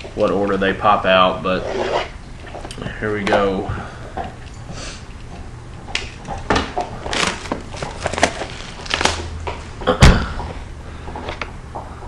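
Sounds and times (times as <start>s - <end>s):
cardboard and wrapper rustling: 6.6s - 9.7s.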